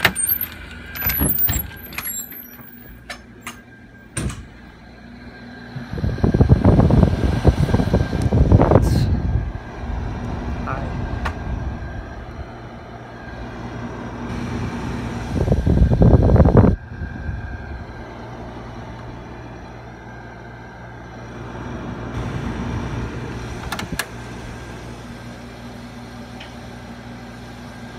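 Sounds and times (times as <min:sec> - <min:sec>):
air conditioner humming: 0:00.0 - 0:27.9.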